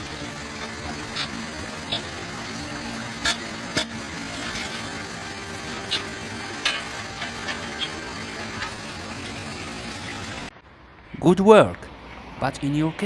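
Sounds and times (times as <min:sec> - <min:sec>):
water running into drain: 0:00.0 - 0:10.5
rake clacking on metal grate: 0:00.6 - 0:08.8.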